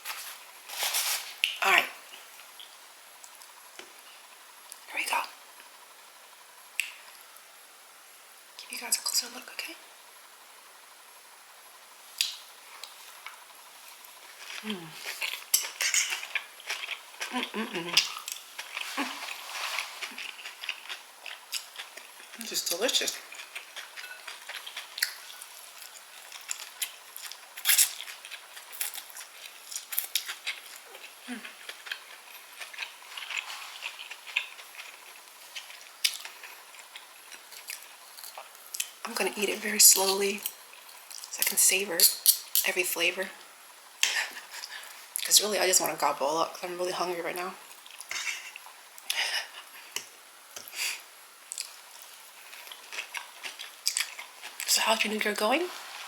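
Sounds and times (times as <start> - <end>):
chewing with wet mouth clicks: 6.8 - 7.2, 14.5 - 18.9, 20.0 - 22.5, 23.1 - 39.0, 51.5 - 54.7.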